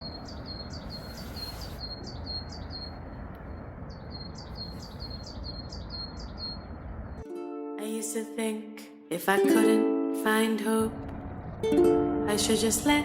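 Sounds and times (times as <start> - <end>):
steady low rumble: 0.0 - 7.2, 10.8 - 13.0
songbird calling short high notes: 0.7 - 2.5.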